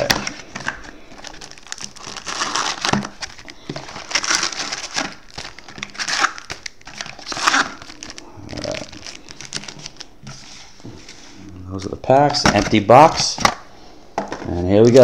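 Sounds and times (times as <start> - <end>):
cardboard and wrappers crinkling: 0.0 - 11.6.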